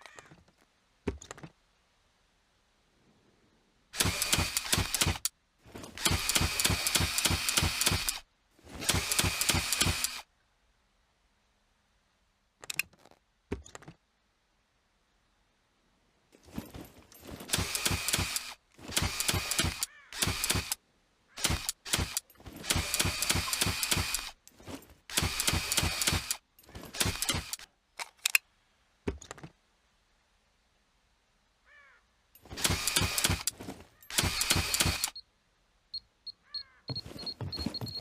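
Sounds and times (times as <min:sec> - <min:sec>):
rapid mechanical clicking bursts: 0:04.0 - 0:05.3, 0:05.9 - 0:08.2, 0:08.8 - 0:10.3, 0:17.5 - 0:20.8, 0:21.4 - 0:24.4, 0:25.0 - 0:27.7, 0:32.5 - 0:35.2.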